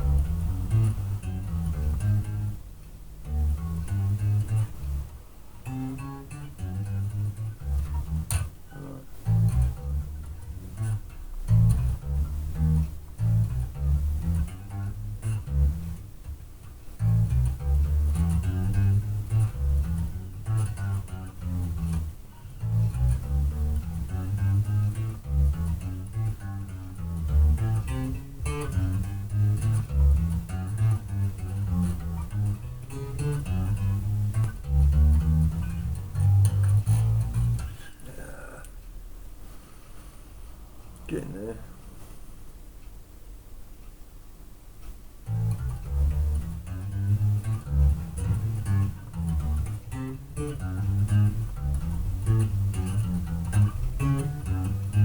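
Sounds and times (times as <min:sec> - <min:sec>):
electric bass guitar notes: 0:00.0 - 0:38.8, 0:45.2 - 0:55.0.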